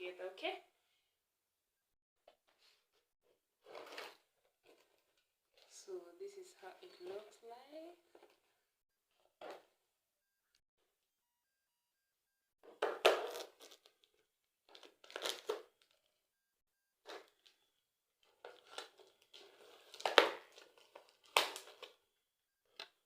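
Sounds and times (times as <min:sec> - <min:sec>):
packaging crinkling: 0:14.7 - 0:16.0.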